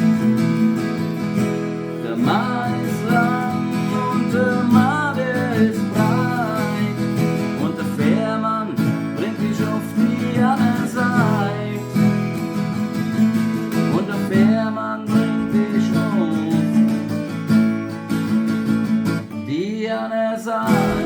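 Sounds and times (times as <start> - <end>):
strummed acoustic guitar: 0.0 - 21.0
person singing: 1.9 - 12.2, 13.9 - 17.2, 19.5 - 21.0.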